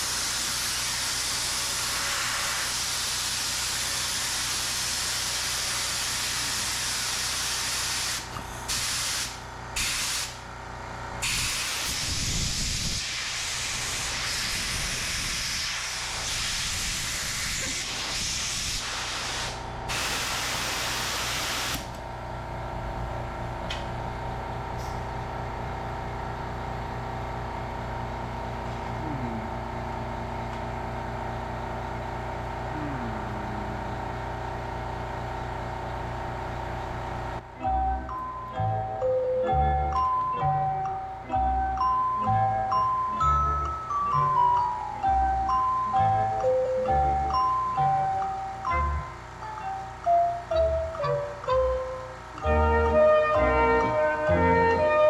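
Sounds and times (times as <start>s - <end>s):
compressed air hissing: 0.0s - 10.4s, 11.2s - 22.0s
low steady hum: 32.6s - 34.2s.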